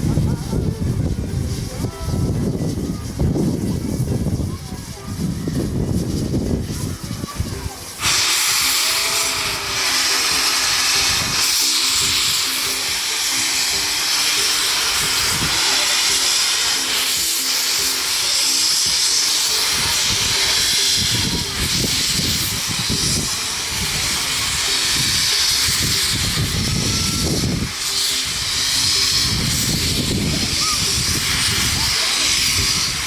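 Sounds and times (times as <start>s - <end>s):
locomotive steam hissing: 0.0s - 33.0s.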